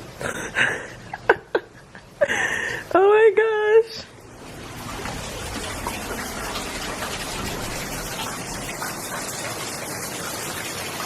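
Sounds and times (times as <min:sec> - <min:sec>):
heavy rain pouring: 0:04.1 - 0:11.0
drops splashing: 0:04.2 - 0:11.0.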